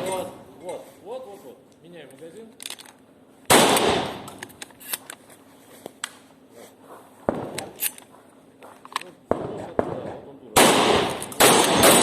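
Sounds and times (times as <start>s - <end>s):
shotgun shot with echo: 3.5s - 4.3s, 9.3s - 12.0s.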